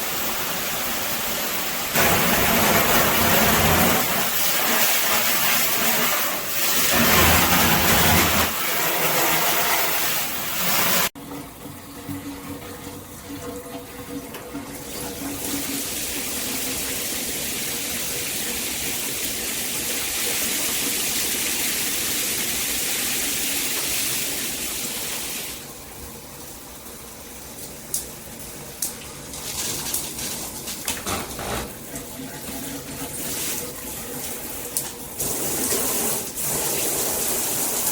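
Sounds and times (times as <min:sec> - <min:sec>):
water spraying from shower head: 0:00.0 - 0:11.2, 0:34.8 - 0:37.9.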